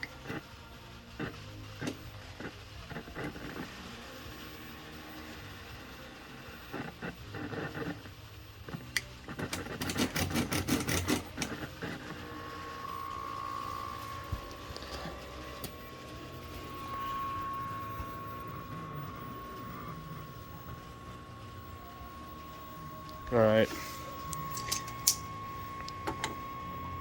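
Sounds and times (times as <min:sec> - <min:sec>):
low hum: 0:11.2 - 0:27.0
high-pitched tone: 0:11.8 - 0:27.0.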